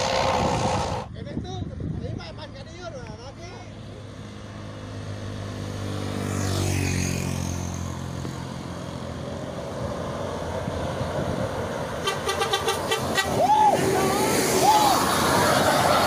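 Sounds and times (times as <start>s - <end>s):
road noise: 0.0s - 16.0s
bus engine passing: 3.3s - 16.0s.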